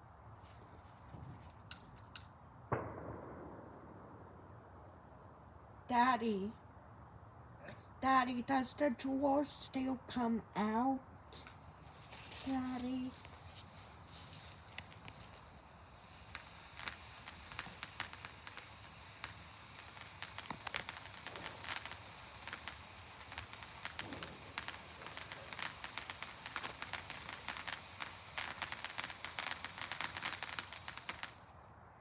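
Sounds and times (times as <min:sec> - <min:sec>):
firework fizzing and crackling: 0:00.8 - 0:04.1, 0:11.2 - 0:31.7.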